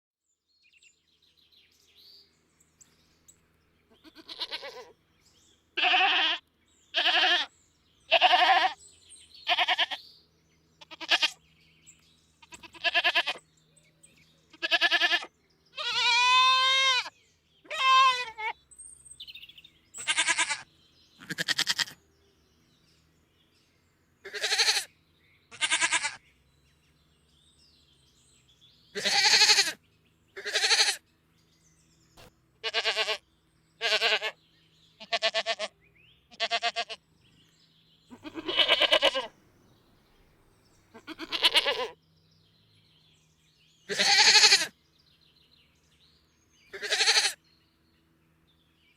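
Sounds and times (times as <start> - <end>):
goat bleating: 3.9 - 5.0, 5.8 - 7.5, 8.1 - 8.8, 9.4 - 10.0, 10.8 - 11.4, 12.4 - 13.4, 14.5 - 18.6, 20.0 - 22.0, 24.2 - 24.9, 25.5 - 26.2, 28.9 - 29.8, 30.4 - 31.0, 32.6 - 33.2, 33.8 - 34.4, 35.0 - 37.0, 38.1 - 39.3, 40.9 - 42.0, 43.9 - 44.8, 46.7 - 47.4.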